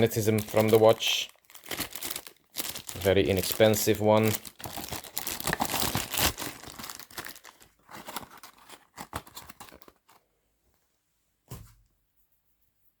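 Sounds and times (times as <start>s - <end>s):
plastic packaging crinkling: 0.0s - 10.3s
thump: 11.5s - 11.8s.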